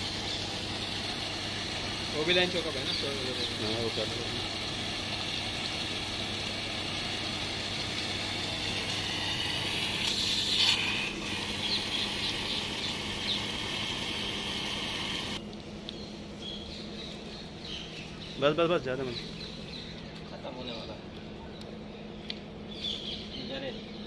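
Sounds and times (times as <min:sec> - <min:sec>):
water jet running: 0:00.0 - 0:15.4.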